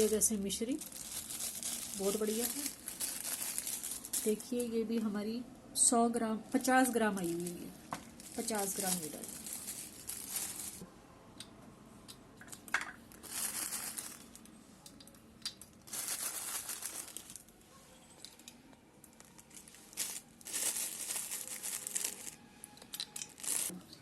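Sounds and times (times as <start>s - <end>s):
packets crinkling and rustling: 0.0s - 4.8s, 7.1s - 10.8s, 13.1s - 14.5s, 15.7s - 17.5s, 18.3s - 22.4s, 23.0s - 23.8s.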